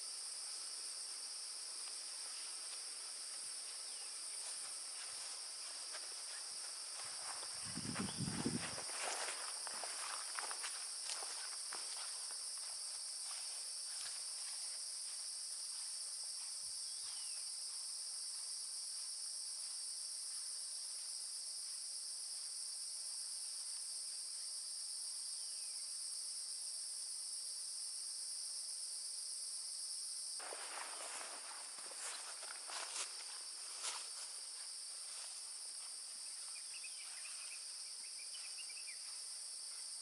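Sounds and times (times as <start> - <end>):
insects buzzing shrilly: 0.0 - 18.3, 30.4 - 40.0
faint rustling in leaf litter: 30.4 - 37.3.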